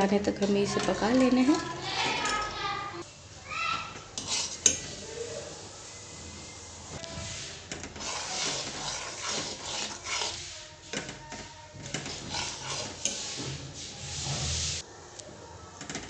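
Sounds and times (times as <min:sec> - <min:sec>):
milk boiling: 0:00.0 - 0:16.0
spoon scraping and clinking in pan: 0:04.0 - 0:05.0, 0:08.0 - 0:10.4, 0:11.9 - 0:13.4.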